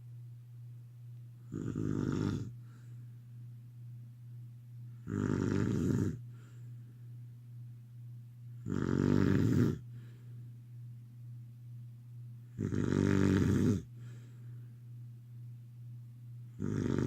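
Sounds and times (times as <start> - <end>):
steady low hum: 0.0 - 17.0
person snoring: 1.5 - 2.6, 5.0 - 6.2, 8.6 - 9.9, 12.6 - 14.2, 16.6 - 17.0.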